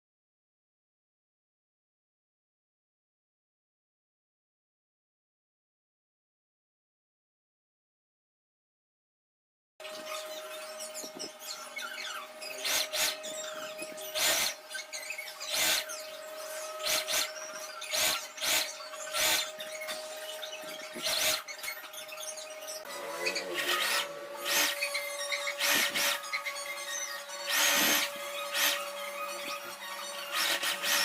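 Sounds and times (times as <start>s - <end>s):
sewing machine stitching: 23.1s - 31.0s.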